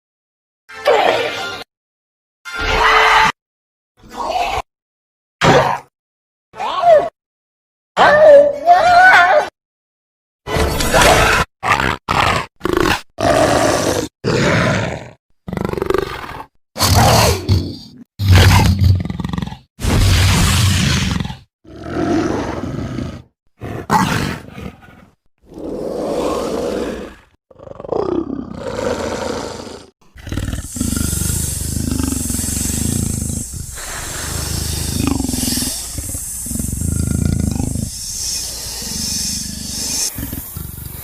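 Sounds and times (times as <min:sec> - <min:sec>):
dinosaur roars and growls: 0:10.8 - 0:41.0.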